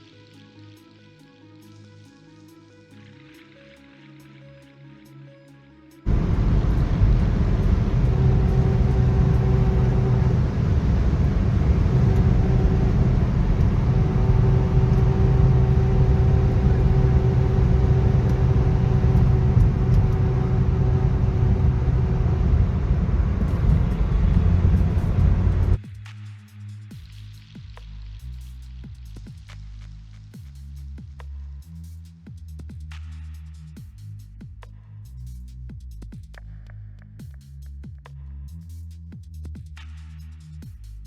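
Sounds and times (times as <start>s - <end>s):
loud car noise with low drone: 6.1s - 25.8s.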